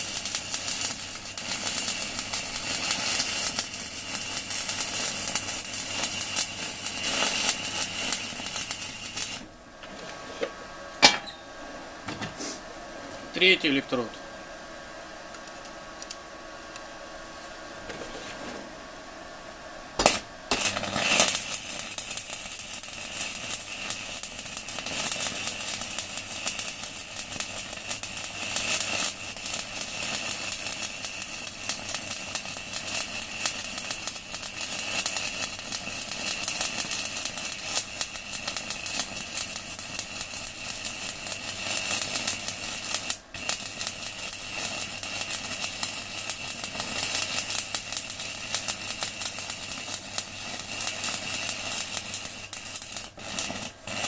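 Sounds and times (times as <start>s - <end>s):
welding arc crackling: 0.0s - 9.5s, 20.0s - 54.0s.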